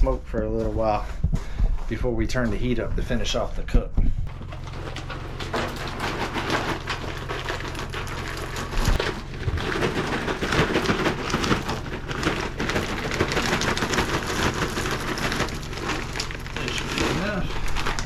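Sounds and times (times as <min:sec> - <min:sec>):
wood chips pattering in a pan: 0:04.4 - 0:18.0.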